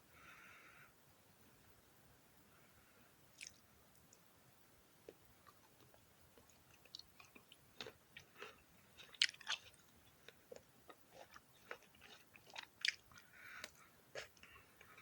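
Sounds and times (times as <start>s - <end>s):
crunchy chewing of grapes: 3.4s - 3.6s, 5.0s - 15.0s.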